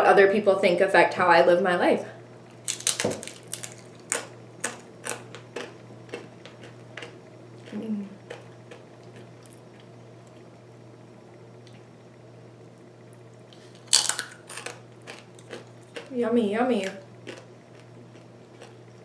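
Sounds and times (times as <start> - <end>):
steady low hum: 0.0 - 19.0
chewing crunchy food: 2.5 - 10.6, 13.0 - 16.2, 16.8 - 19.0.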